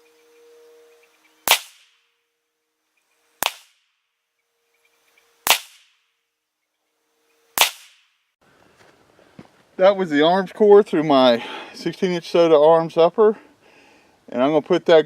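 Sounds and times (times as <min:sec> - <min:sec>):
rifle shots with echo: 0:01.5 - 0:02.0, 0:03.4 - 0:03.8, 0:05.5 - 0:05.9, 0:07.6 - 0:08.0.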